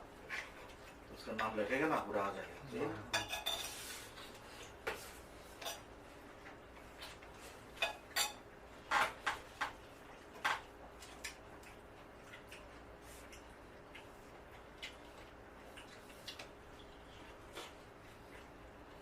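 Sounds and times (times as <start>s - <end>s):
cutlery clinking on plates: 3.1s - 3.8s, 7.7s - 9.8s.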